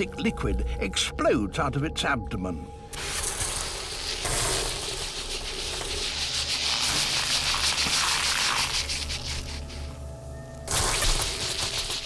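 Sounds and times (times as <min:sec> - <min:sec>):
crackling sizzling spray hiss: 0:03.0 - 0:12.0.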